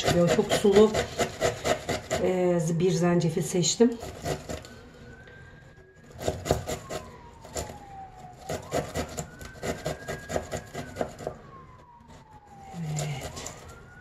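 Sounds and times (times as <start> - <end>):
ginger rasping on a grater: 0.0 - 2.4
faint siren wailing: 0.0 - 14.0.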